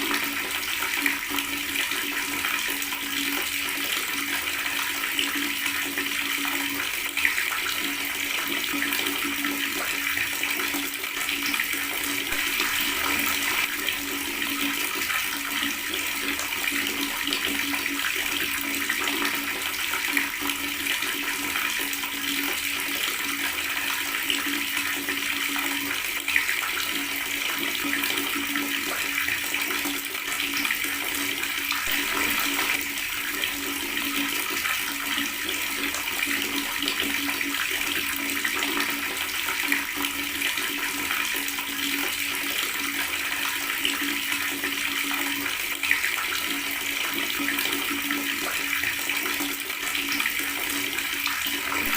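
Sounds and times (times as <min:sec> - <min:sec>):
water running from tap: 0:00.0 - 0:51.9
water splashes: 0:12.0 - 0:15.5, 0:31.8 - 0:35.1, 0:51.3 - 0:51.9.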